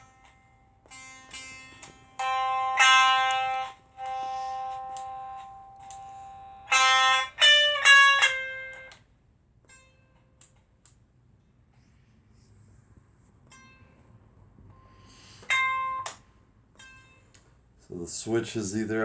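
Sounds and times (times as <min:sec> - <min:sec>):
electric guitar string plucked: 0:00.0 - 0:09.0.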